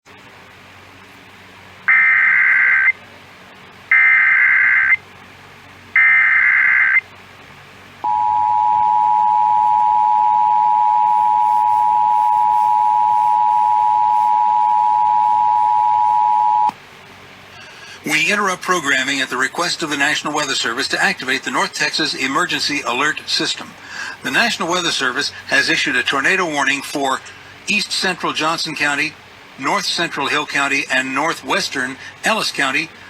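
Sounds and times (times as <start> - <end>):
warbling data bursts: 1.9 - 3.0, 3.9 - 5.0, 6.0 - 7.0
two-tone attention signal: 8.0 - 16.7.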